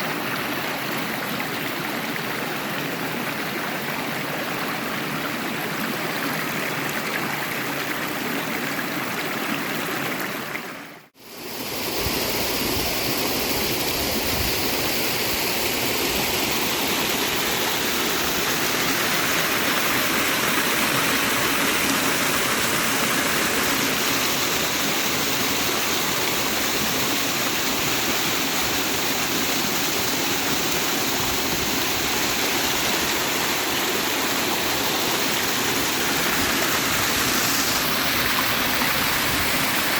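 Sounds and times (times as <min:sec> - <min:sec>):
river and waterfall rushing: 0:11.6 - 0:39.9.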